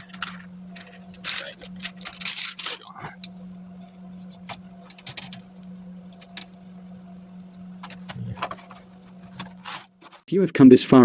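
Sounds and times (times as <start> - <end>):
plastic parts clicking and rustling: 0.0 - 3.6, 4.3 - 6.6, 7.8 - 10.2
steady low hum: 0.0 - 11.0.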